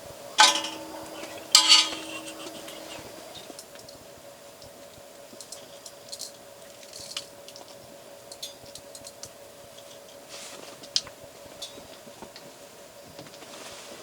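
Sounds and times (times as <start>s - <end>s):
steady hum: 0.3s - 3.5s
utensils and dishes clicking: 0.4s - 3.4s.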